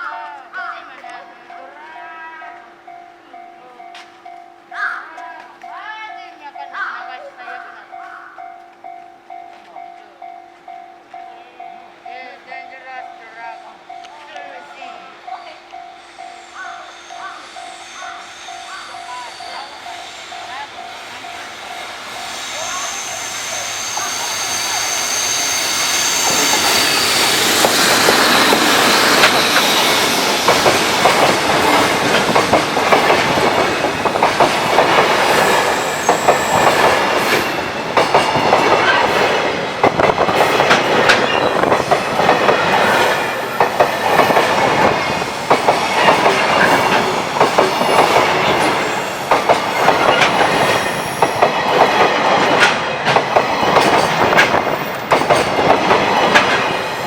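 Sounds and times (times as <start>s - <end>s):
freight train rumbling past: 5.5s - 57.0s
wheels clickety-clack on rail joints: 26.2s - 57.0s.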